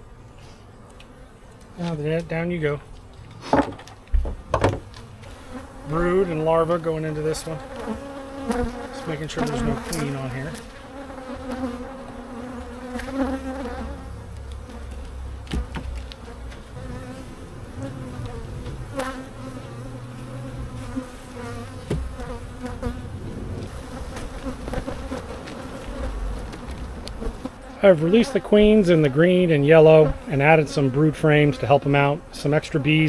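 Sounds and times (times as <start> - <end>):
bees buzzing around hive: 0.0 - 33.0
sharp knocks: 3.4 - 4.9, 21.8 - 22.2.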